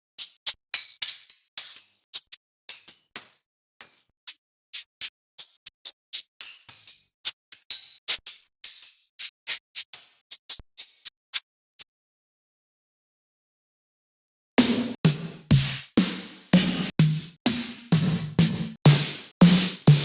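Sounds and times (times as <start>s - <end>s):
bright percussion hits: 14.6s - 20.0s.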